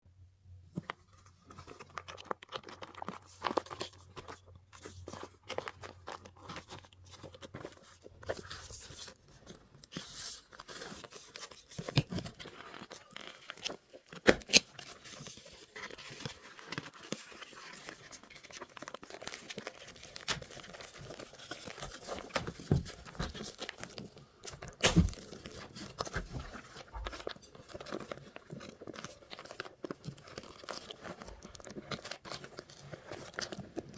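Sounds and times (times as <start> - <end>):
plastic wrapping crinkling and tearing: 0.8 - 33.9.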